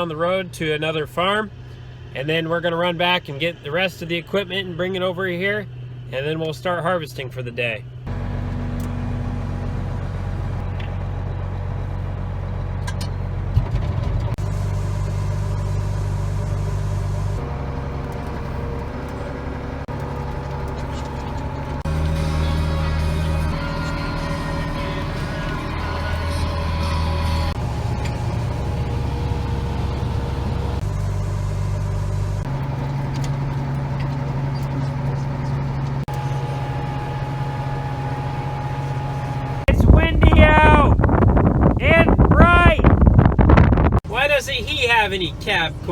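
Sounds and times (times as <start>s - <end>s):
engine hum from inside vehicle: 0.0s - 45.9s.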